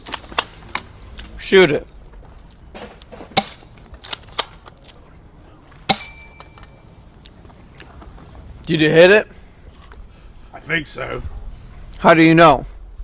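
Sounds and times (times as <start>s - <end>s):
bell target ringing: 5.9s - 6.8s.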